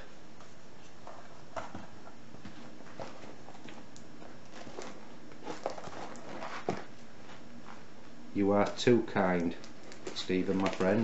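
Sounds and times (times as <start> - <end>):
knife scraping parcel: 4.5 - 7.8.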